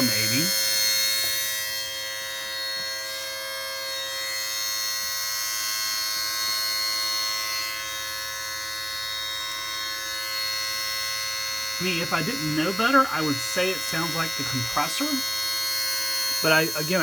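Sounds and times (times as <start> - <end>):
high-pitched electrical squeal: 0.0 - 3.2, 11.6 - 17.0.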